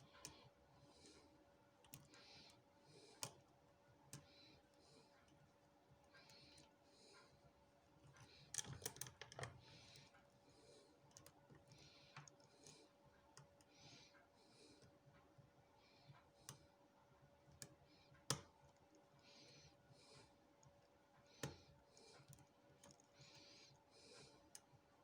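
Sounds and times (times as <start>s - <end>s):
small metallic clicks: 8.0s - 10.2s.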